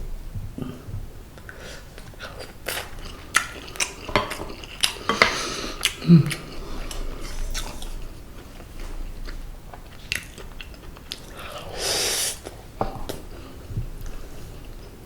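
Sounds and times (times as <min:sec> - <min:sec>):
soft chewing with wet clicks: 0:01.4 - 0:11.7.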